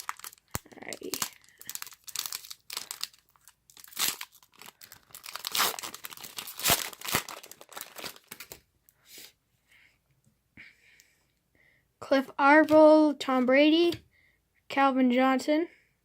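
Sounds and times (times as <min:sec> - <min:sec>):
wrapper tearing and crinkling: 0:00.0 - 0:08.6.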